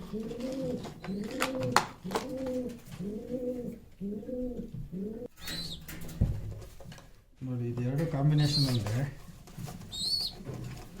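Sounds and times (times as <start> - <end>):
pigeons cooing: 0.0 - 5.9.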